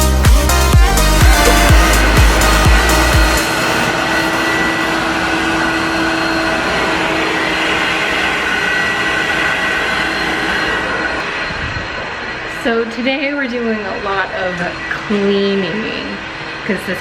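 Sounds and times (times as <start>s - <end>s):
appliance motor whirring: 0.0s - 7.6s.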